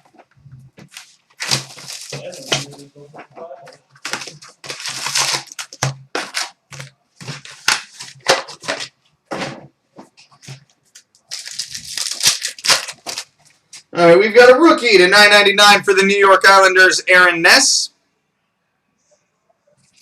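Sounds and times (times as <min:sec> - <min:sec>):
wrapping tearing and crinkling: 0:00.8 - 0:02.8, 0:03.9 - 0:08.9, 0:10.3 - 0:13.8.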